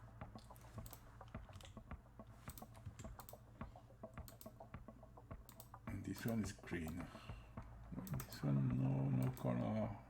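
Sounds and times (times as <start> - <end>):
computer keyboard clicking: 0.4 - 1.8, 2.5 - 3.4, 5.4 - 7.0, 8.0 - 8.5.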